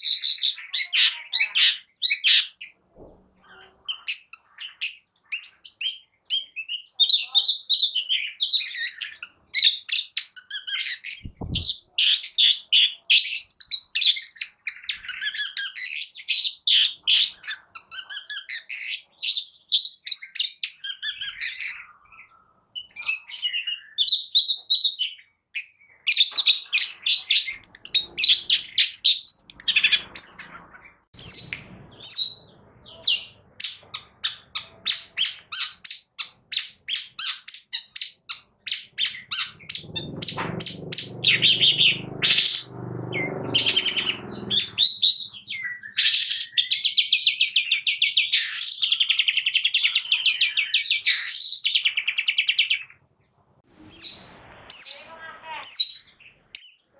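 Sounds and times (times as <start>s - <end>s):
bird singing chirps and trills: 0.0s - 2.8s, 3.4s - 53.0s, 53.9s - 56.9s.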